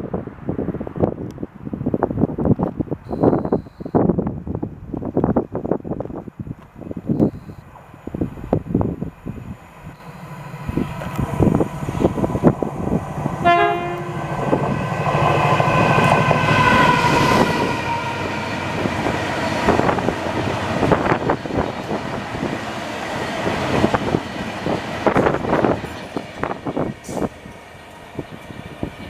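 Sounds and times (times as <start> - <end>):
high ringing tone: 3.1 - 4.0, 7.1 - 7.7, 9.9 - 10.9
train engine rumble: 7.7 - 29.0.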